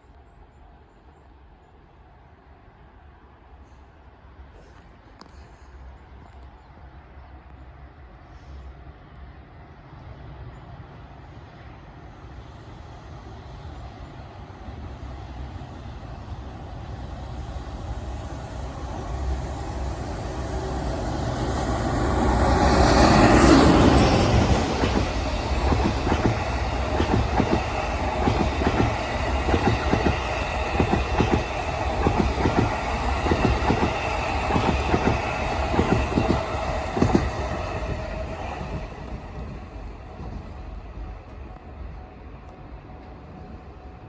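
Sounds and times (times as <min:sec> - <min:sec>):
locomotive passing: 0:16.0 - 0:44.0
train wheels clacking on rails: 0:21.6 - 0:41.8.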